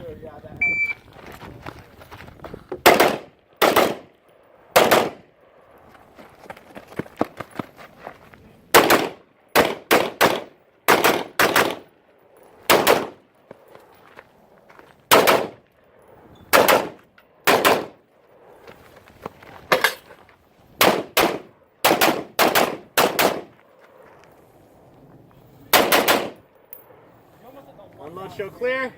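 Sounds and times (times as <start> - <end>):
rifle shots with echo: 2.8 - 4.1, 4.8 - 5.2, 8.7 - 11.9, 12.7 - 13.2, 15.1 - 15.6, 16.5 - 18.0, 20.8 - 23.5, 25.7 - 26.4.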